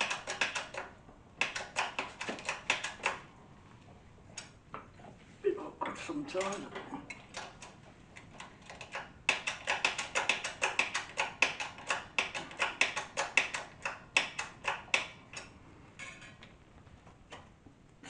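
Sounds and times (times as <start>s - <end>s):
sharp metallic tool clicks: 0.0s - 3.2s, 8.7s - 15.5s.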